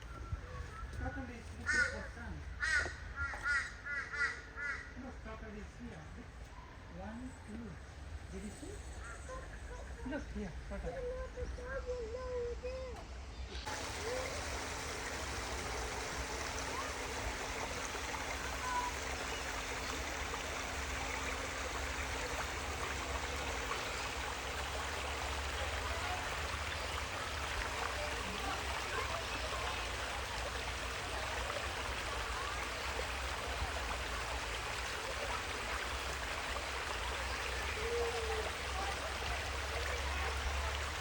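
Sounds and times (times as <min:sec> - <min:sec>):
running water splashing: 0:13.6 - 0:41.0.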